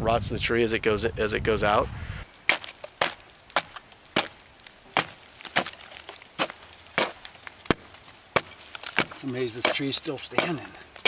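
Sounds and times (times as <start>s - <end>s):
axe chopping into wood: 2.4s - 11.0s.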